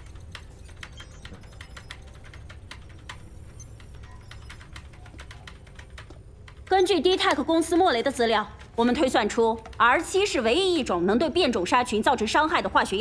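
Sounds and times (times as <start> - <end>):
keyboard typing clicks: 0.0 - 10.3.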